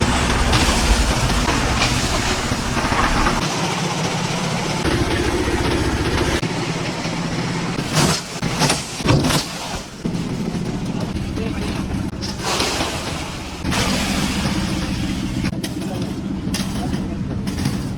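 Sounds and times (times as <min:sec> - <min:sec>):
steady machine rumble: 0:00.0 - 0:09.0, 0:09.8 - 0:17.9.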